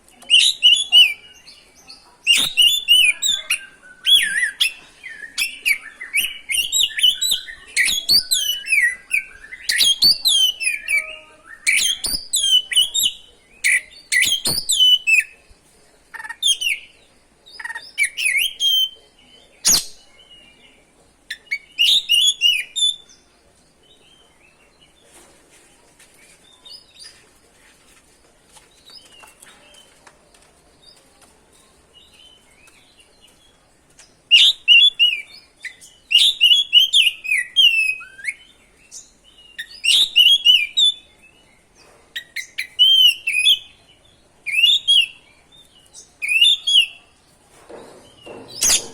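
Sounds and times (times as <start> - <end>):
bird singing whistled phrases: 2.3 - 15.3, 34.3 - 38.5, 39.6 - 41.0, 42.2 - 43.7, 46.2 - 47.0.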